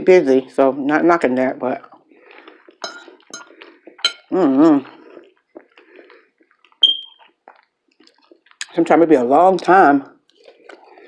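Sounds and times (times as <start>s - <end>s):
cutlery clinking on a plate: 2.8s - 4.3s.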